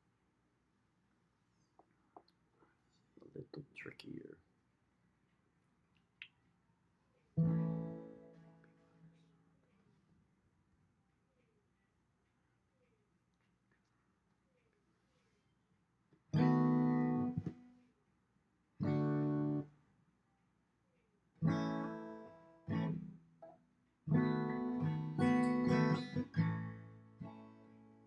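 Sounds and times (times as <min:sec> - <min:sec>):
acoustic guitar chords strummed: 0:07.4 - 0:08.9, 0:24.1 - 0:28.0.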